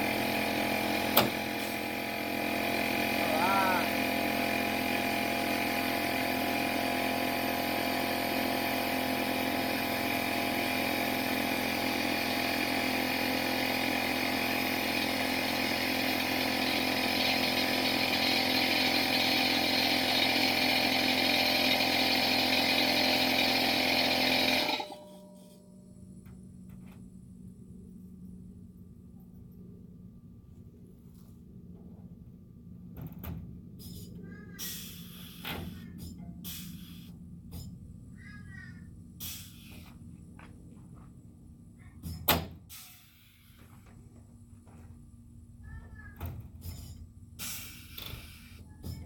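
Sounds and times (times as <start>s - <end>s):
air compressor running: 0.0s - 27.8s, 32.8s - 44.8s, 46.6s - 49.0s.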